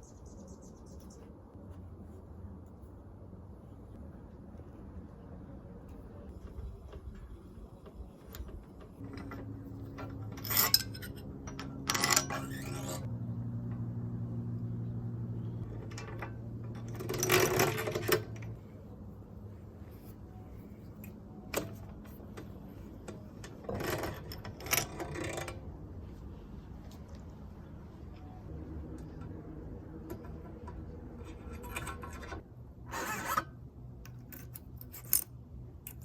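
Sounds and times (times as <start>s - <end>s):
low steady hum: 0.0s - 36.0s
metal tools clinking and clattering: 8.5s - 13.1s.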